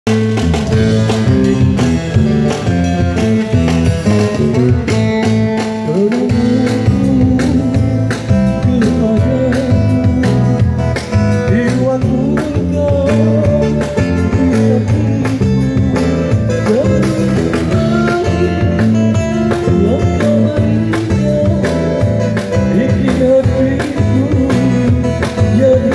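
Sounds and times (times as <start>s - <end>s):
strummed guitar: 0.1s - 25.9s
person singing: 5.6s - 25.9s.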